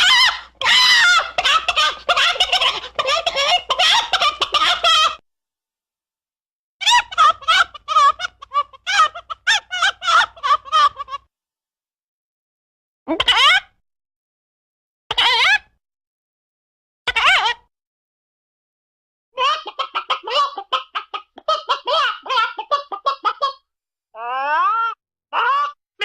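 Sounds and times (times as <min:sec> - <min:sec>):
chicken clucking and squawking: 0:00.0 - 0:05.2, 0:06.9 - 0:11.2, 0:19.4 - 0:23.6.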